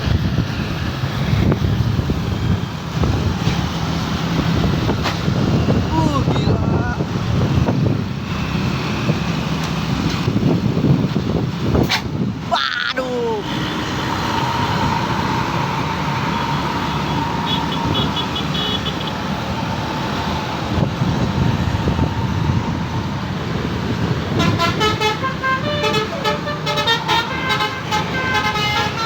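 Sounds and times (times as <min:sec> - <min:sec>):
bus engines and traffic rumble: 0:00.0 - 0:29.0
multi-tone musical air horn tune: 0:24.4 - 0:29.0.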